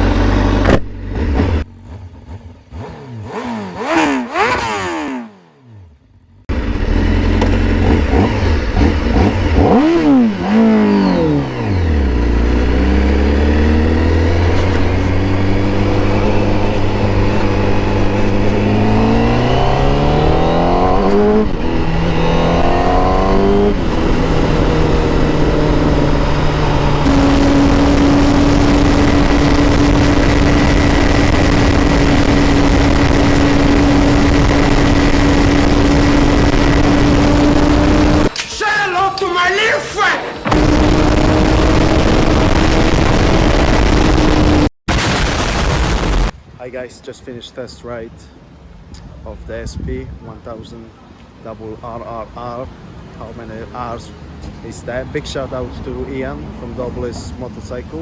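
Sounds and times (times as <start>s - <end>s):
motorcycle engine accelerating: 0.0s - 38.3s, 40.4s - 46.4s.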